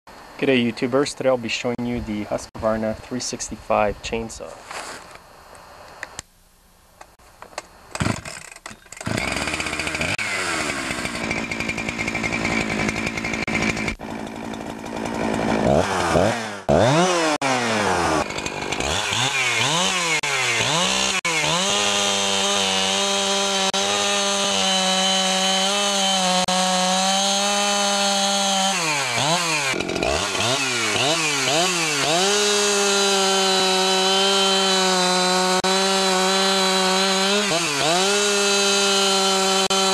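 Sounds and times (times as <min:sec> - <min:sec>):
chainsaw starter cord pulls: 0:07.9 - 0:19.9, 0:29.2 - 0:34.5
chainsaw engine revving: 0:07.9 - 0:39.9.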